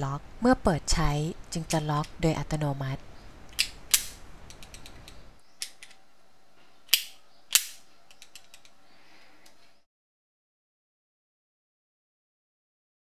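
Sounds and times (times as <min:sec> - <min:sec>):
carabiner gate clicking: 0:03.5 - 0:06.0, 0:06.9 - 0:08.8.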